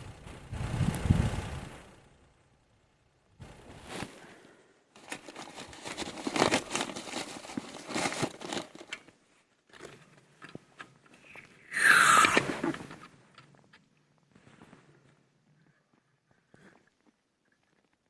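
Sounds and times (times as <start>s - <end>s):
plastic packaging crinkling: 5.0s - 9.2s.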